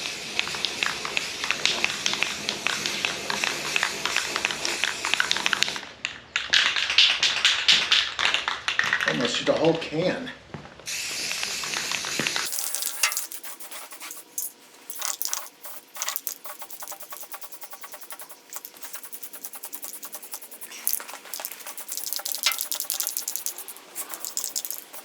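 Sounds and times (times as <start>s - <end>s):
spray can mixing ball rattling: 12.4s - 25.0s.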